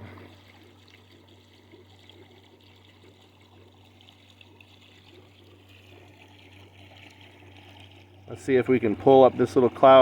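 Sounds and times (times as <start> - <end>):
pool pump humming: 0.0 - 10.0
water trickling: 0.0 - 10.0.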